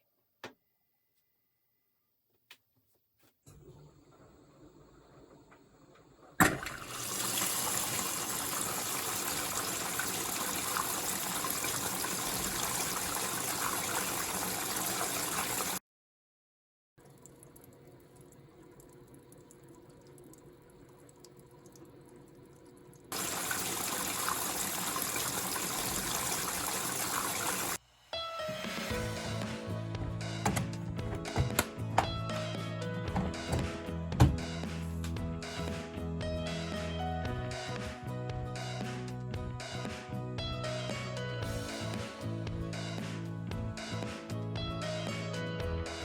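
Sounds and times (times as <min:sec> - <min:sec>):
water rushing into washing machine: 0:03.5 - 0:15.8, 0:17.0 - 0:27.8, 0:28.5 - 0:32.5, 0:33.1 - 0:34.5.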